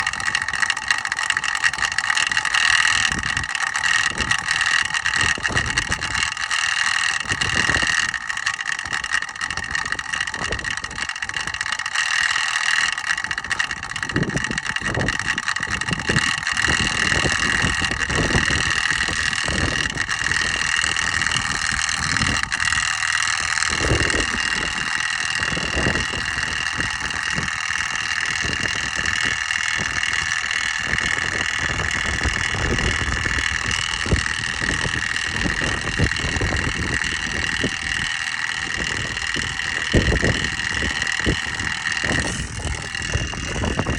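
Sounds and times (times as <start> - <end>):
water pump motor whining: 0.0 - 43.9
low rumbles: 13.2 - 43.9.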